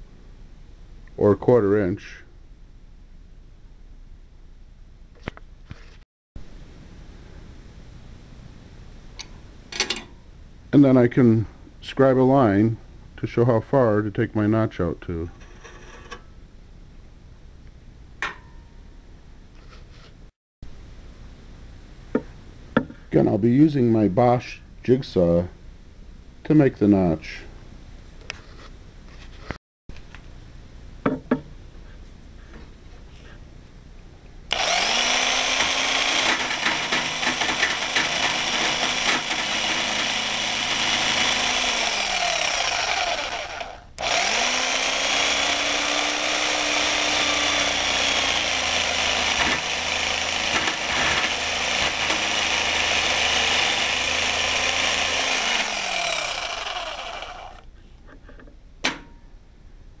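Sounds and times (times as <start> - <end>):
jigsaw cutting metal: 34.5 - 57.6.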